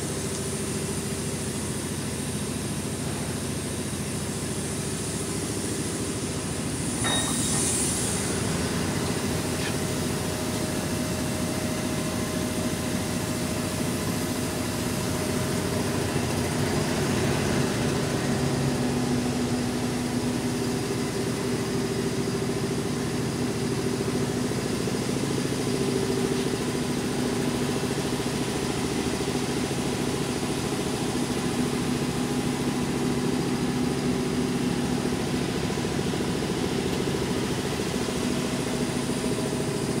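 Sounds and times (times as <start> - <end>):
held machine tones: 7.0 - 7.7.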